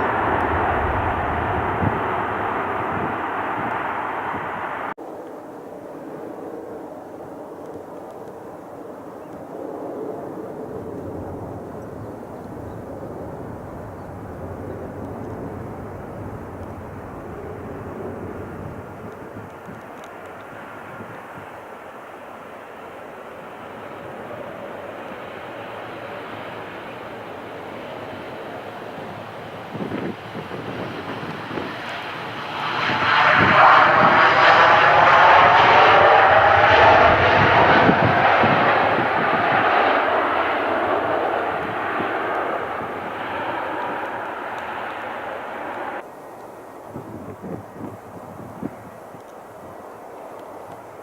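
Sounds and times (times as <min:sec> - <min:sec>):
jet engines running: 0:00.0 - 0:05.0, 0:10.6 - 0:47.9.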